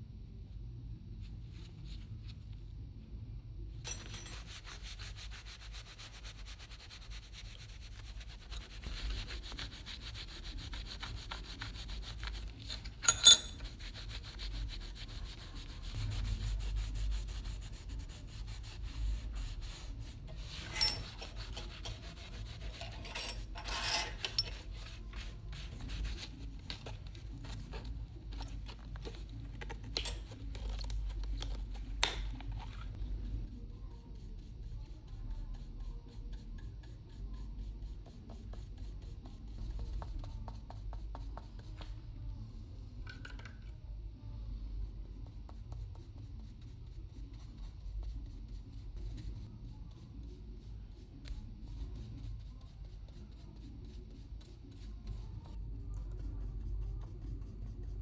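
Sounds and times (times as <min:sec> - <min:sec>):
hand rubbing on a knife: 0:04.3 - 0:29.0.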